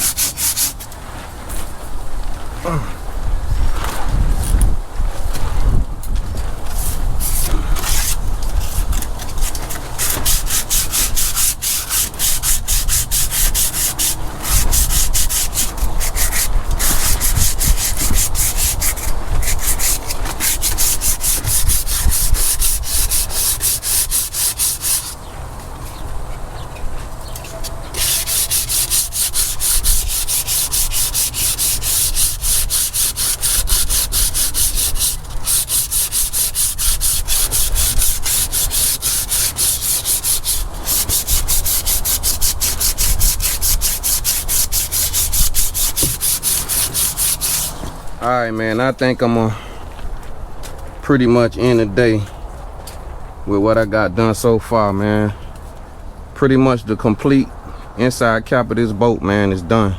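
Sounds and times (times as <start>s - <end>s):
sandpaper rubbing: 0.0s - 1.0s, 6.7s - 25.3s, 27.4s - 48.3s.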